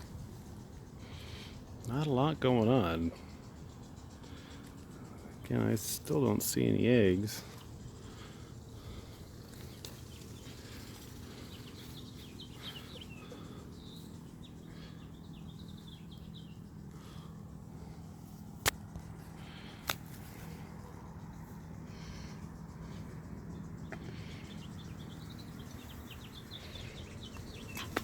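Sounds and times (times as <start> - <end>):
birds chirping: 0.0 - 28.0
honeybees humming: 0.0 - 28.0
sharp clicks: 18.6 - 19.1.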